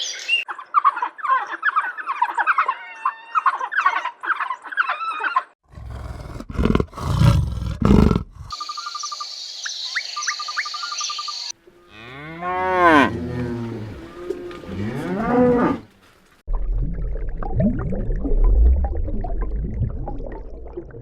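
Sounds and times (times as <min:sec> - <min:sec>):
deep animal roar: 0:05.7 - 0:08.6
long low moo: 0:11.9 - 0:15.9.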